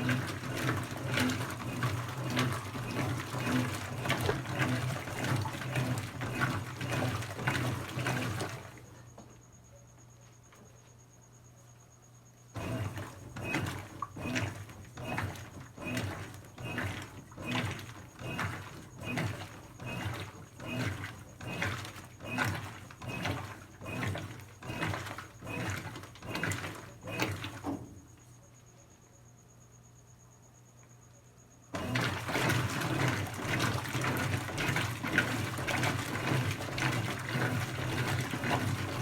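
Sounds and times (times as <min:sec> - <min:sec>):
washing machine swishing water: 0:00.0 - 0:09.0, 0:12.6 - 0:28.2, 0:31.7 - 0:39.0.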